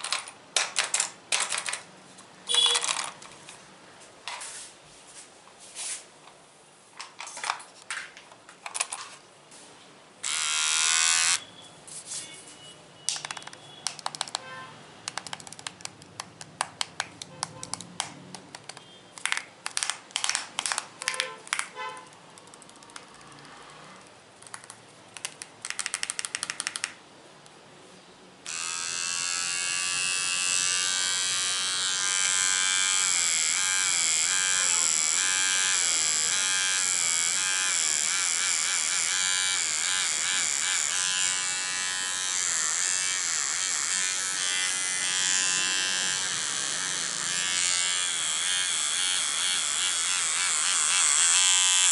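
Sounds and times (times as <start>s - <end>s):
small electric motor buzzing: 10.2s - 11.4s, 28.5s - 51.9s.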